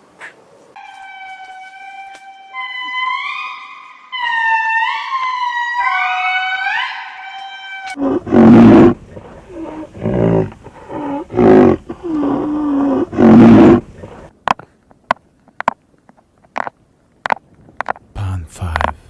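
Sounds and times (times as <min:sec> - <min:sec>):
animal giving low calls: 0:07.9 - 0:14.3.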